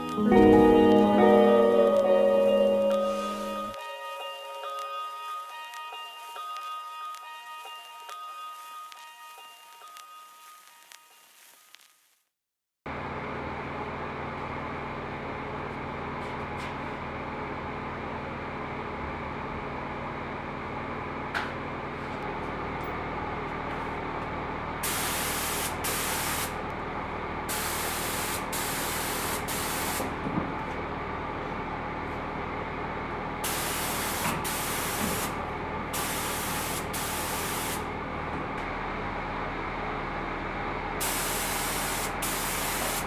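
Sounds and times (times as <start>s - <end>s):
spray gun hissing: 24.8s - 26.5s, 27.5s - 30.0s, 33.5s - 35.3s, 36.0s - 37.8s, 41.0s - 43.0s.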